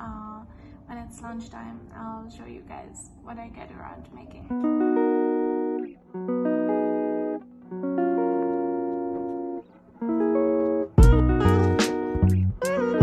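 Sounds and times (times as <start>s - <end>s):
held guitar chords: 3.8s - 13.0s
drums and bass beat: 11.0s - 12.9s.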